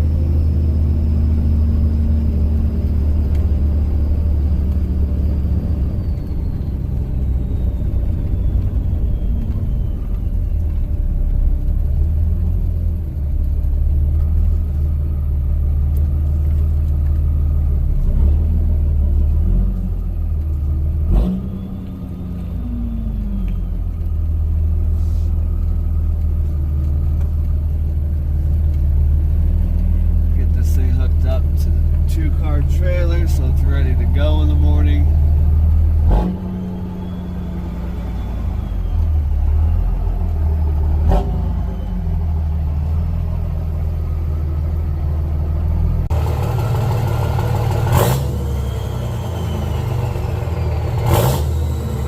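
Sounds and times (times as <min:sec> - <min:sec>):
diesel engine exhaust drone: 0:00.0 - 0:52.0
turbo whistle: 0:05.6 - 0:11.1, 0:36.1 - 0:40.2, 0:48.0 - 0:50.5.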